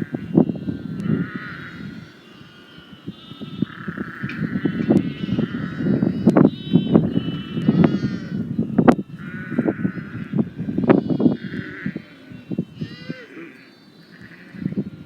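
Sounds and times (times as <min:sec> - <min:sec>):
short animal calls: 0:09.2 - 0:14.9.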